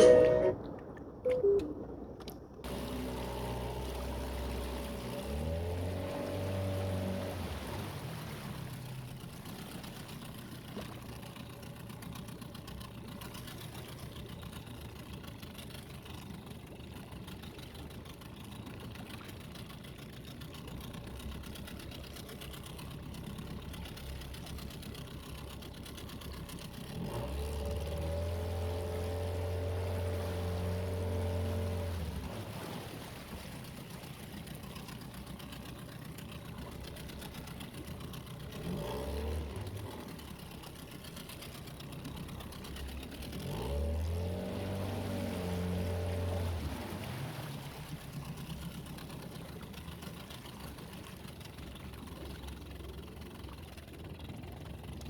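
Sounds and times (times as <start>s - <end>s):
small boat engine running: 0.0s - 0.7s, 1.4s - 55.0s.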